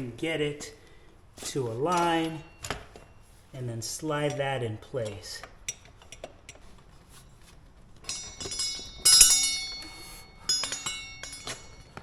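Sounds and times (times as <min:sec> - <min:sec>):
metal parts clinking and ringing: 0:08.0 - 0:12.0.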